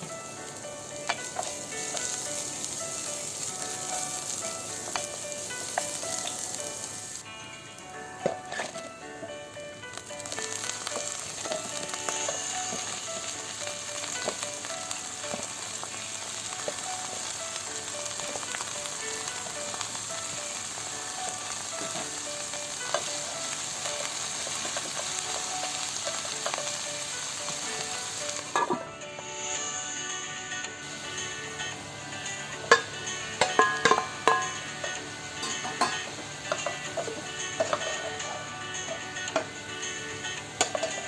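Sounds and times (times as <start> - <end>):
vegetables sizzling in a pan: 0.0 - 41.0
utensil clattering: 32.7 - 39.5.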